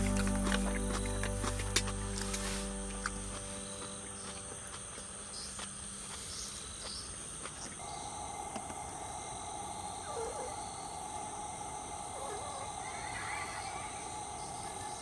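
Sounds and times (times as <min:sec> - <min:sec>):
low steady noise: 0:00.0 - 0:06.2
insects chirring: 0:00.0 - 0:15.0.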